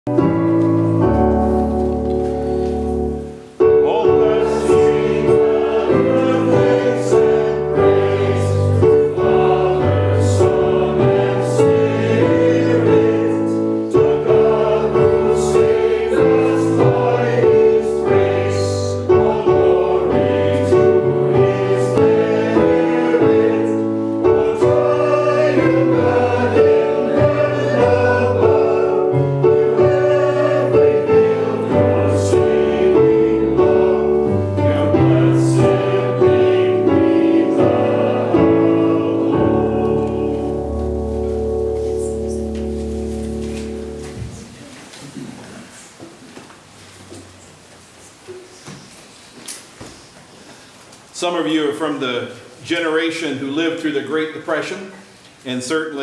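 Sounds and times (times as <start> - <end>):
choir singing gospel music: 0.1 - 44.6.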